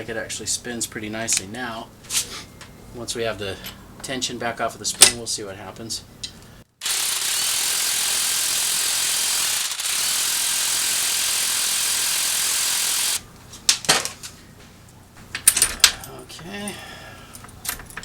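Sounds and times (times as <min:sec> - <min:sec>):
impact wrench running: 0:06.8 - 0:13.2.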